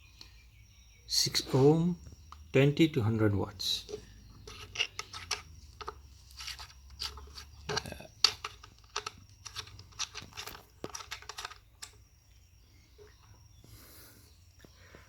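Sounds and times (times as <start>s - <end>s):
small knocks and clicks: 3.8s - 12.1s.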